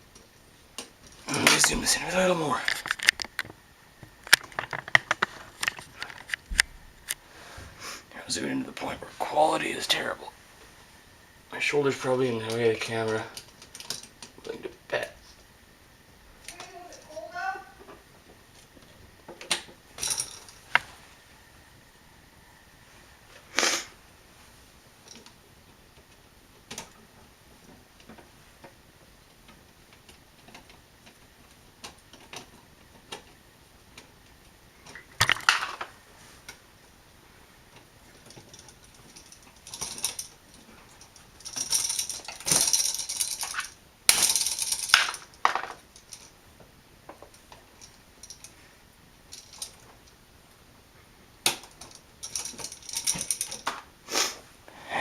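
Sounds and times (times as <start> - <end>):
screwdriver and metal parts clicking: 0.8 - 3.5, 38.2 - 46.4, 47.8 - 48.5, 49.3 - 49.8, 51.4 - 53.8
metal parts clattering: 20.0 - 20.7, 38.2 - 46.3, 49.3 - 49.8, 51.6 - 53.8.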